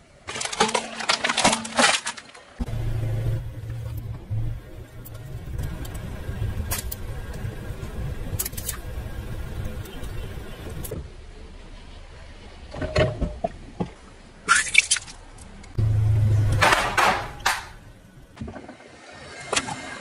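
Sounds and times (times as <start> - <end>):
car engine rumbling: 2.6 - 14.5, 15.1 - 18.6.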